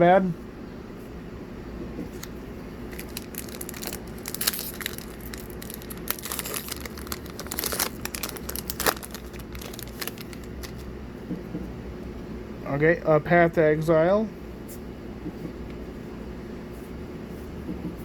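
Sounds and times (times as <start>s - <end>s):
trading cards rustling: 2.1s - 10.9s
wrapper crinkling: 2.2s - 10.9s.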